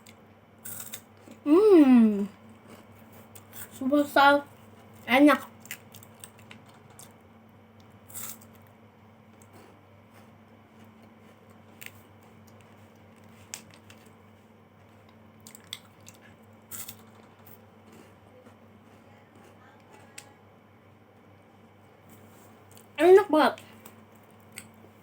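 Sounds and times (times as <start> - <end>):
steady low hum: 0.0 - 25.0
chewing mouth sounds: 15.4 - 17.1.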